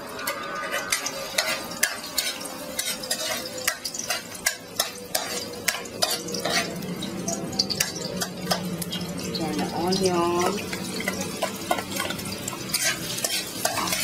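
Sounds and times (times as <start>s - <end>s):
garlic sizzling in oil: 0.0s - 14.0s
utensil scraping and tapping pan: 0.2s - 6.7s, 11.0s - 14.0s.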